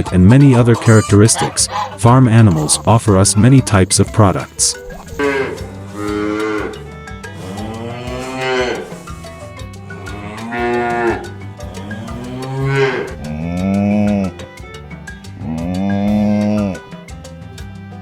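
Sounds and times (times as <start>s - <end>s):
cattle mooing: 4.7s - 14.5s, 15.4s - 16.8s.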